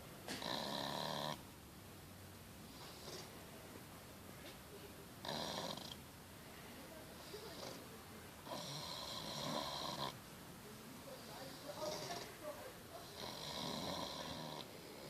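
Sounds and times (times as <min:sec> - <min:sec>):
pig snoring: 0:00.3 - 0:01.4, 0:02.7 - 0:03.3, 0:05.2 - 0:06.0, 0:08.4 - 0:10.2, 0:11.8 - 0:12.4, 0:13.0 - 0:15.0
faint breaths: 0:02.6 - 0:15.0.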